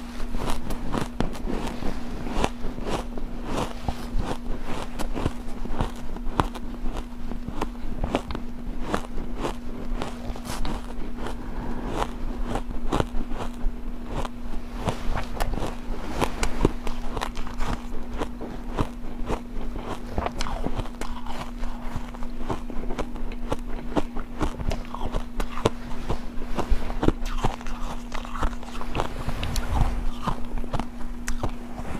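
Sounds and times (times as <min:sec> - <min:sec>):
faint steady hum: 0:00.0 - 0:31.9
chewing ice crunches: 0:00.3 - 0:31.8.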